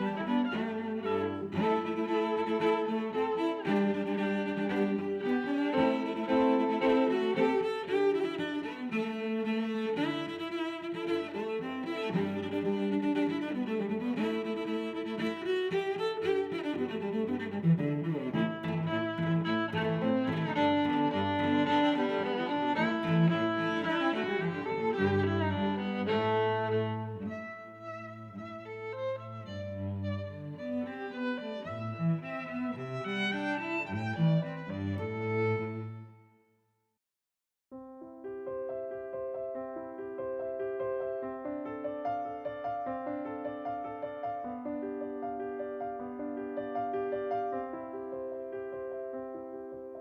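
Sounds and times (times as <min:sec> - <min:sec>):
cello and violin music: 0:00.0 - 0:36.2.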